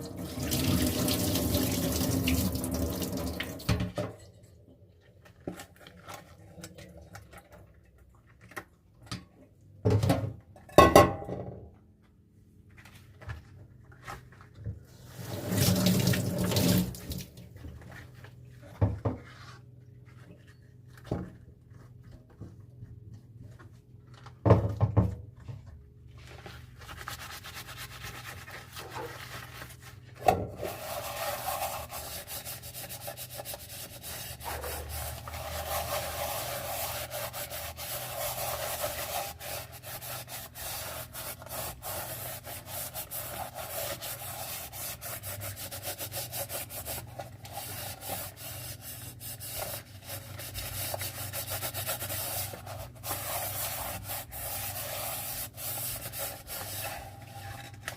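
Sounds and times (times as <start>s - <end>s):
dishes being scrubbed: 27.0s - 57.9s.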